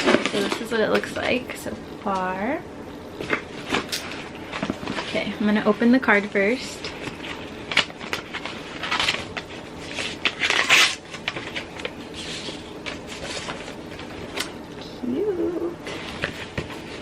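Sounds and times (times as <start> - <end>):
paper rustling and tearing: 6.8 - 14.5.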